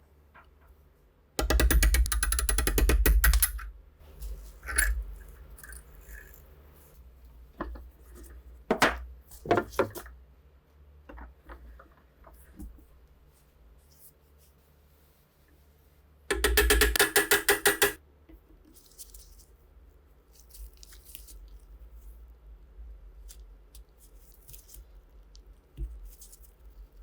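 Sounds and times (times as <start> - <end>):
metal parts clicking and knocking: 1.4 - 3.8, 4.4 - 6.4, 16.3 - 18.0.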